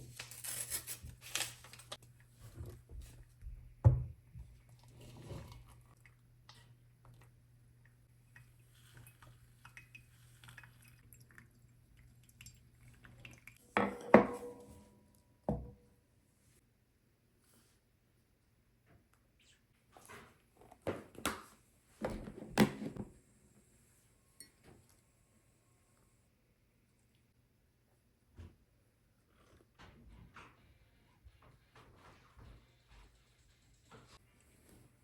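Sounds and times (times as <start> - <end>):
dishes and utensils clinking: 13.7 - 15.6.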